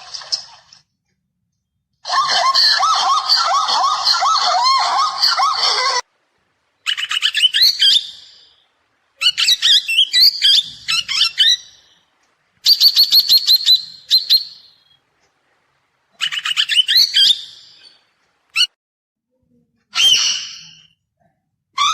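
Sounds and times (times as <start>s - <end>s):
loud screeching bird call: 2.1s - 6.0s, 6.8s - 8.6s, 19.9s - 20.9s
bird chirping: 6.7s - 15.0s, 16.1s - 18.8s.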